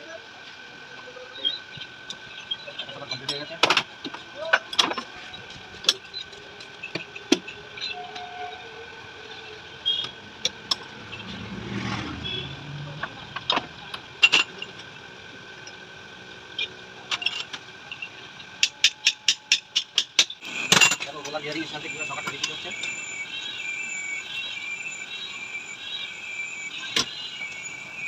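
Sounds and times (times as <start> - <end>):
workshop hum: 0.0 - 28.0
metal tools clinking: 19.0 - 23.0.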